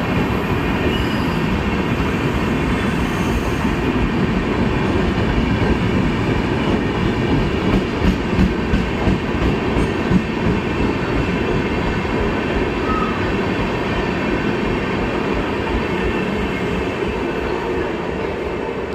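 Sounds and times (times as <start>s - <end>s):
train wheels rumbling on rails: 0.0s - 18.9s
loud knocks of train: 7.3s - 11.3s.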